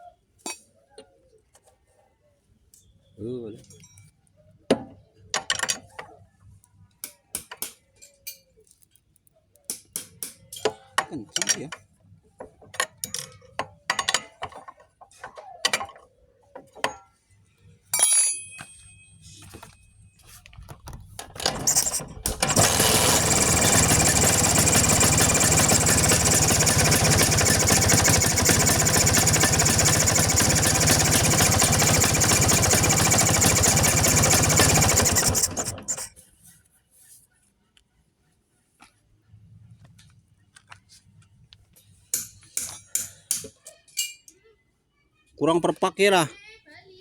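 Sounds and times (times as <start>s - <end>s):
hand tools clicking on engine: 21.2s - 36.1s
scooter engine running: 21.2s - 36.1s.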